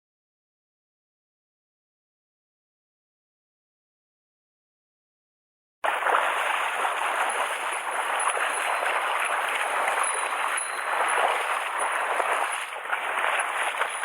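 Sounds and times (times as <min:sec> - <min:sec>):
stream rushing over rocks: 0:05.8 - 0:14.0.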